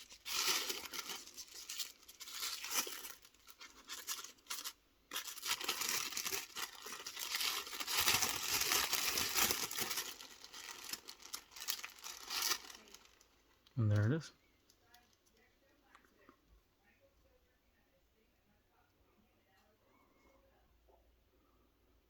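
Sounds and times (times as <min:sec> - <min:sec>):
packaging crinkling and tearing: 0:00.0 - 0:14.2.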